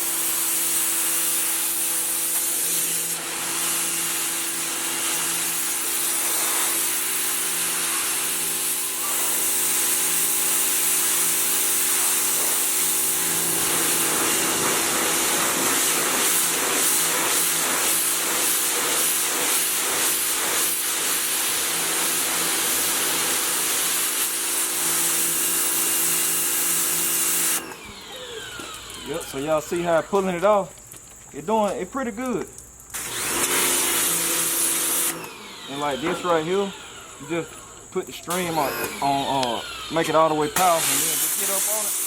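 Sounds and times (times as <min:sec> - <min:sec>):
pressure washer motor humming: 0:00.0 - 0:42.0
water jet spraying: 0:00.0 - 0:42.0.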